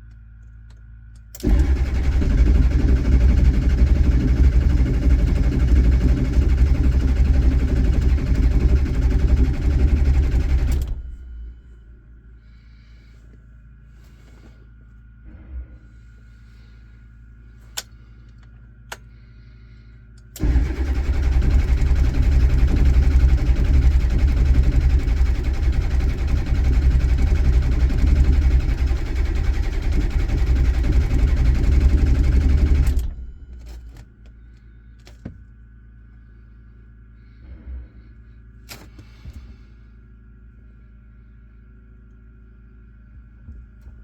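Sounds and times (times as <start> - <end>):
diesel engine cranking on starter: 1.3 - 11.7, 20.2 - 34.0.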